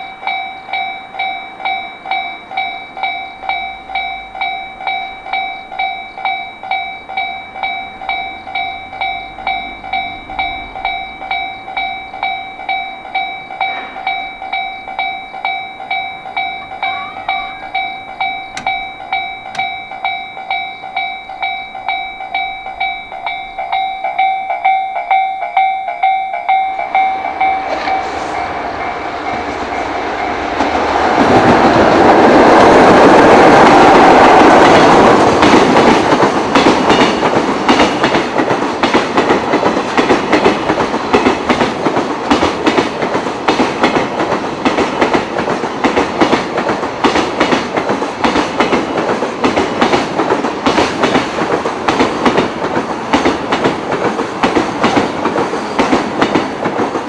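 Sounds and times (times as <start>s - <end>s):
level-crossing bell: 0.0s - 32.7s
electric locomotive passing: 0.0s - 57.0s
wagons clattering over rail joints: 26.7s - 57.0s.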